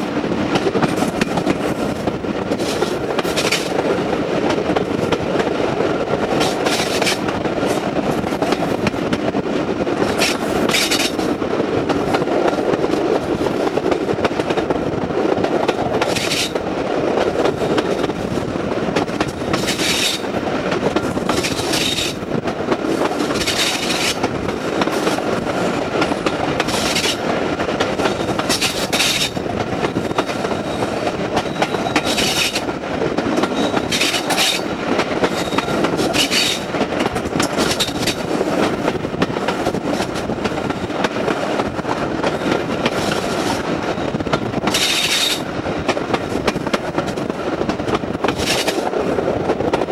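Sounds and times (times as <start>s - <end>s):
train wheels clickety-clack: 0.0s - 49.9s.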